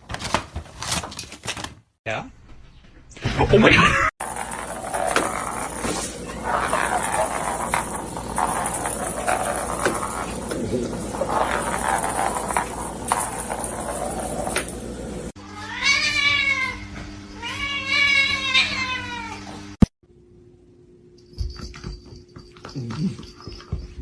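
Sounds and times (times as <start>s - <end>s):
cat meowing: 15.5s - 19.5s.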